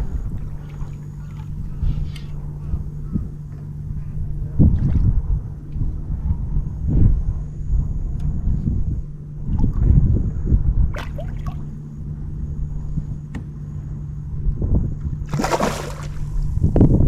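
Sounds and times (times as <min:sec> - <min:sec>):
steady low hum: 0:00.0 - 0:17.0
wind rumble on microphone: 0:00.0 - 0:17.0
water splashing beside boat: 0:11.0 - 0:11.8, 0:15.3 - 0:16.6.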